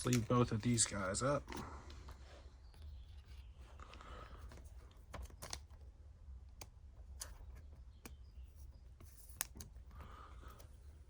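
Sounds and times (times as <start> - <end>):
trading cards clicking and tapping: 0.0 - 1.7.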